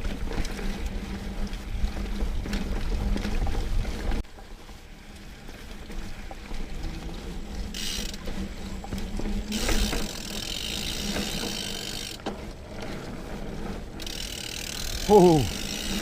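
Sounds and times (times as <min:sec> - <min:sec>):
bicycle freehub ticking: 0:06.0 - 0:12.3, 0:14.0 - 0:16.0.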